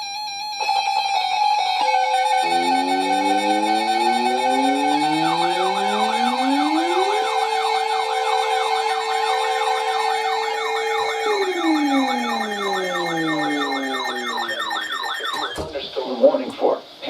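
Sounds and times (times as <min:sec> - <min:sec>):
high siren warble: 0:01.8 - 0:15.8
siren winding up and down: 0:01.8 - 0:15.8
fast siren yelp: 0:02.3 - 0:15.7.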